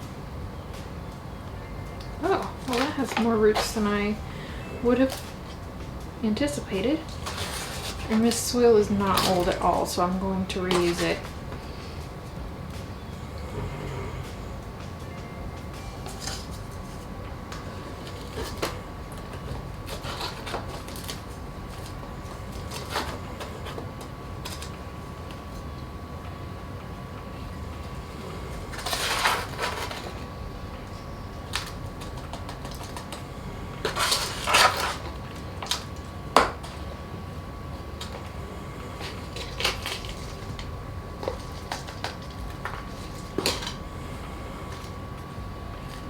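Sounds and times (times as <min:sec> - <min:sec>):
faint steady hum: 0:00.0 - 0:46.0
potting soil rustling: 0:02.1 - 0:05.6, 0:06.2 - 0:14.9.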